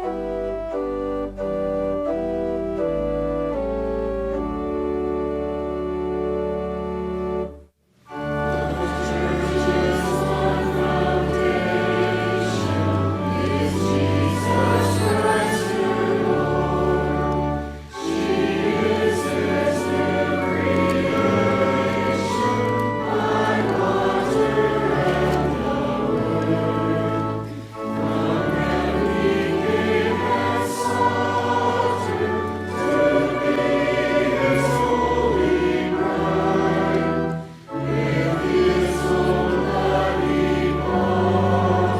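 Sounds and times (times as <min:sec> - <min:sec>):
sustained low accompaniment: 0:00.0 - 0:41.9
choir singing a hymn: 0:08.1 - 0:41.9.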